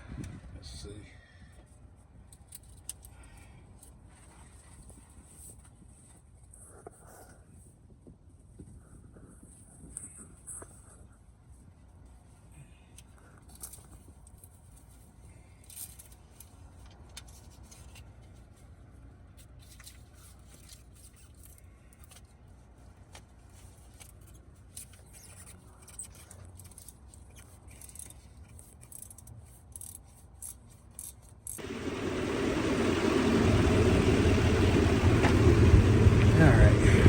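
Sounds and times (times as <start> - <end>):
low steady rumble: 31.6 - 37.0.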